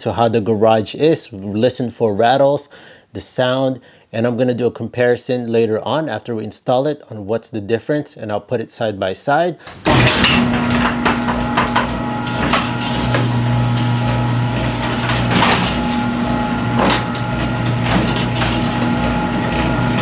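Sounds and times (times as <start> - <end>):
door hinges and rollers rattling: 9.7 - 20.0
garage door opener motor hum: 9.7 - 20.0.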